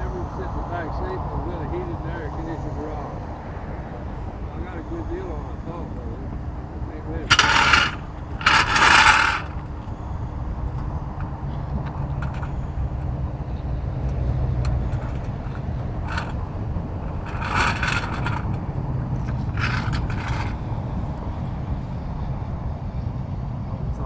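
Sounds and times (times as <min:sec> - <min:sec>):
vehicle engine idling: 0:00.0 - 0:24.0
tools scraping and rattling: 0:06.7 - 0:21.2.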